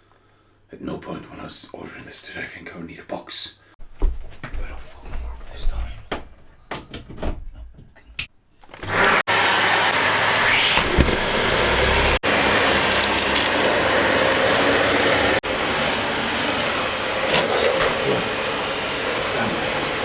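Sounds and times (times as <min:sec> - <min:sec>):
vacuum cleaner running: 0:08.7 - 0:20.0.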